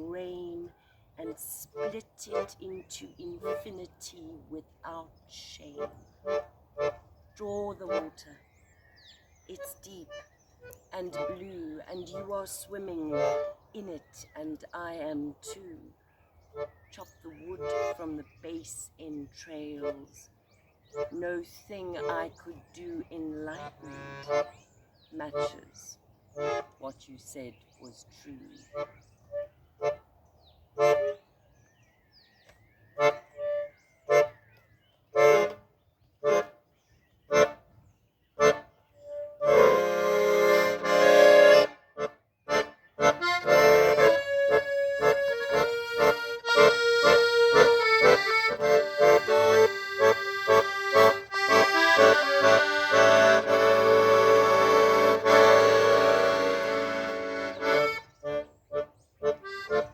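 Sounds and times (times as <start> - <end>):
instrumental music: 22.8 - 24.5, 30.8 - 31.2, 35.2 - 36.6, 38.4 - 59.9.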